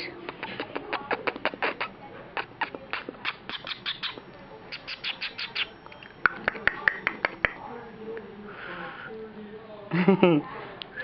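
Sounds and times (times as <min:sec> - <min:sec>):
mouth clicks and lip smacks: 0:00.0 - 0:07.6.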